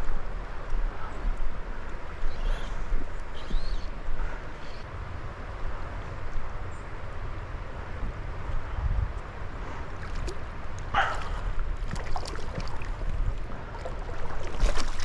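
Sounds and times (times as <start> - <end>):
wind rumbling on microphone: 0.0 - 15.0
river water rushing: 9.4 - 15.0.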